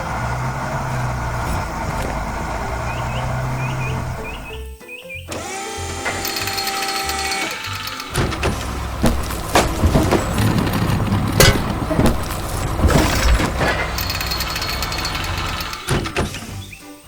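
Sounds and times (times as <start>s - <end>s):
heavy vehicle engine running: 0.0s - 4.7s, 5.3s - 16.7s
sharp knocks and clanks: 5.4s - 16.6s.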